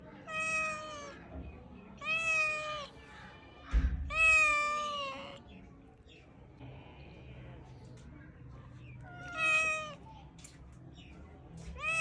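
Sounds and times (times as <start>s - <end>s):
kitten meowing: 0.3s - 1.2s, 2.0s - 2.9s, 4.1s - 5.4s, 9.2s - 10.0s, 11.8s - 12.0s.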